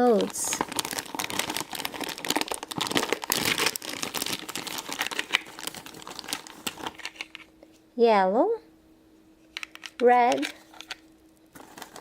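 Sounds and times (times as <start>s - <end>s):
plastic packaging crinkling: 0.0s - 7.5s, 9.5s - 12.0s
plastic clicks: 9.6s - 11.0s.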